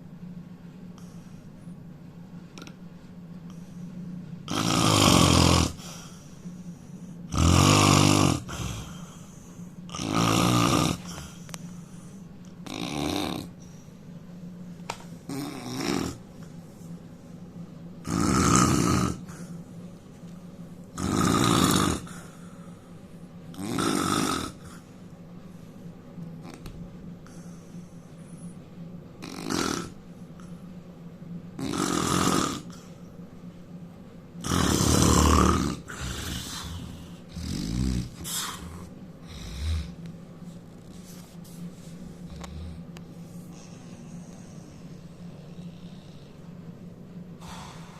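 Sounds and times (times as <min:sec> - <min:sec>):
steady low hum: 0:00.0 - 0:47.9
man snoring loudly: 0:04.5 - 0:05.9, 0:07.3 - 0:09.1, 0:09.9 - 0:11.2, 0:12.6 - 0:13.6, 0:15.3 - 0:16.2, 0:18.0 - 0:19.4, 0:20.9 - 0:22.3, 0:23.5 - 0:24.8, 0:29.2 - 0:30.0, 0:31.6 - 0:32.8, 0:34.4 - 0:40.0.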